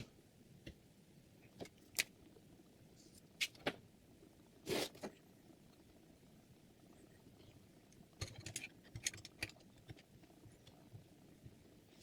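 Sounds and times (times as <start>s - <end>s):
objects clicking and knocking: 8.1s - 10.8s.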